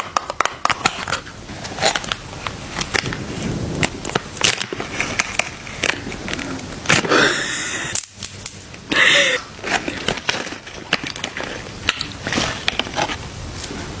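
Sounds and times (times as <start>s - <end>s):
person chewing crunchy food: 8.8s - 13.2s.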